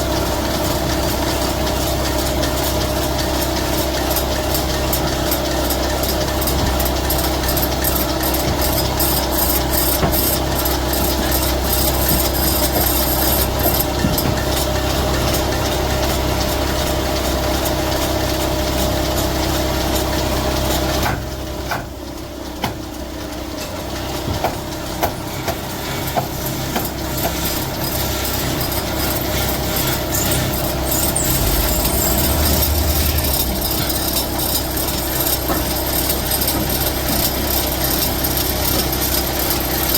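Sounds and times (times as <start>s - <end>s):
sharp clicks and knocks: 3.9s - 14.9s
woodworking machine motor hum: 25.7s - 39.9s.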